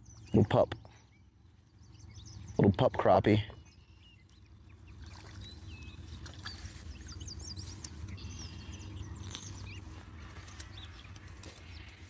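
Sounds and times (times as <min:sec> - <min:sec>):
low steady rumble: 0:00.0 - 0:12.0
small birds chirping: 0:00.0 - 0:12.0.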